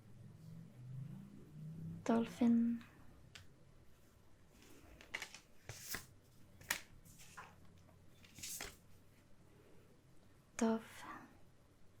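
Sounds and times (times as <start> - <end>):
cards swishing and tapping: 5.0 - 7.5, 8.2 - 8.8.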